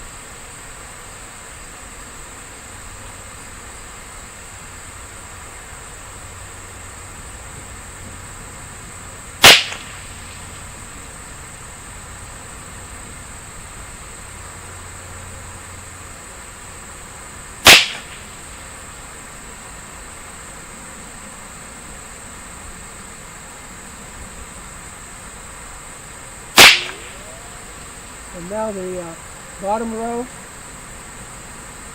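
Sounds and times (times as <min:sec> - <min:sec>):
rifle shots: 0:09.4 - 0:10.4, 0:17.6 - 0:18.4, 0:26.6 - 0:27.7.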